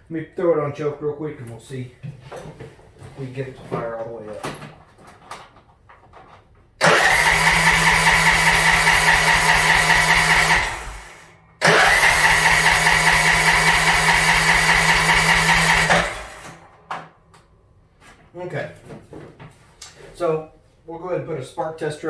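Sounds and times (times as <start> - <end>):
electric starter cranking engine: 6.8 - 16.8.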